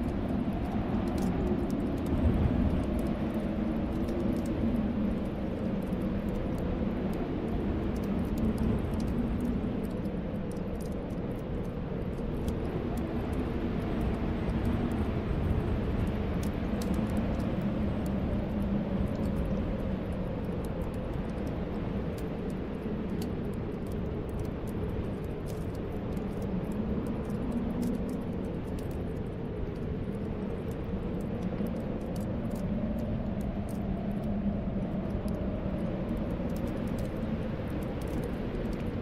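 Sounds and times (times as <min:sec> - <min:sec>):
wood fire crackling: 0:00.0 - 0:39.0.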